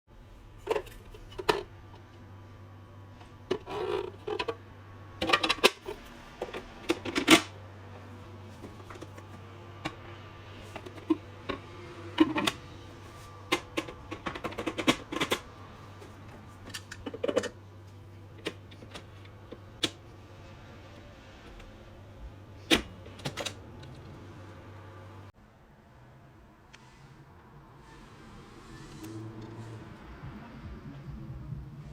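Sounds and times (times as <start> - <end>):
low hum: 0.1 - 31.9
plastic parts clicking and knocking: 5.2 - 7.5, 13.5 - 17.6.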